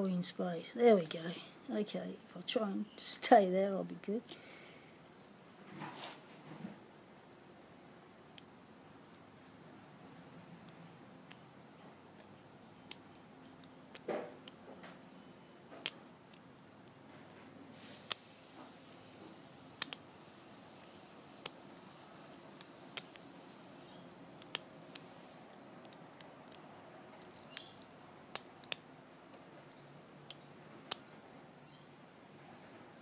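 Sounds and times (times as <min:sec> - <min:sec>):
brief hiss: 0:17.7 - 0:19.0.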